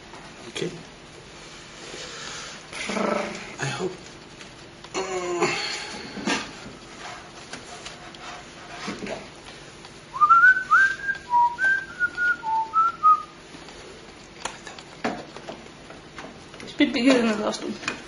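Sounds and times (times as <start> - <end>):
person whistling a tune: 10.1 - 13.3.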